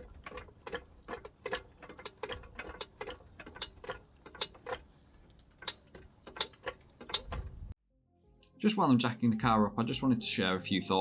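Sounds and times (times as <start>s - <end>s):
car jack clicking: 5.6s - 7.7s.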